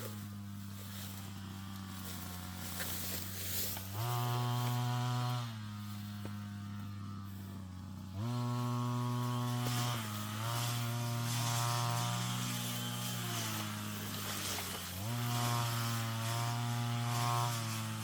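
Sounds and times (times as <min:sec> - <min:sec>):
brush cutter engine revving: 0:00.0 - 0:18.0.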